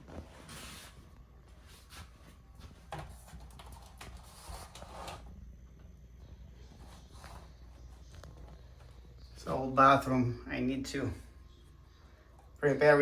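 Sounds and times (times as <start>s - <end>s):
faint knocks and rustles: 0.0s - 6.0s
low steady hum: 0.0s - 13.0s.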